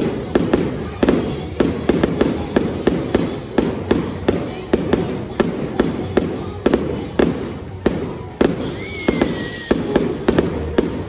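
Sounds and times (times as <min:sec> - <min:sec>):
firework shells bursting: 0:00.0 - 0:11.0
high firework whistle: 0:08.0 - 0:11.0.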